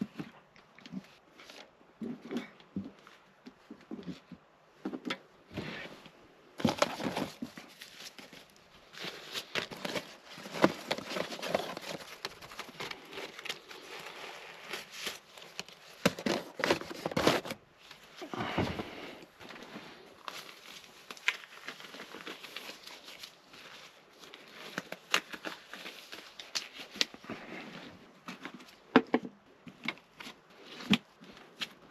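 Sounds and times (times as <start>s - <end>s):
packaging rustling and crinkling: 6.6s - 29.0s.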